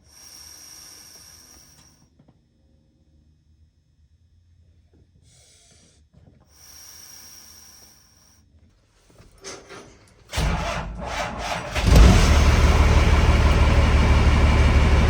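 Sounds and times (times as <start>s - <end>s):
faint hissing: 5.3s - 8.4s
loud rough truck engine: 10.3s - 15.0s.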